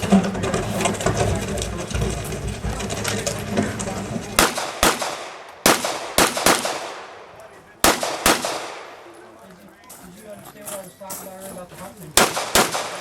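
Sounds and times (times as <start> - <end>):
gunshots with echo: 4.4 - 9.1, 12.2 - 13.0.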